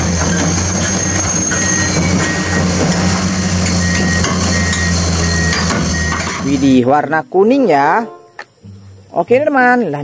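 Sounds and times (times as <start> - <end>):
short high beep: 1.0 - 2.8, 3.8 - 6.2.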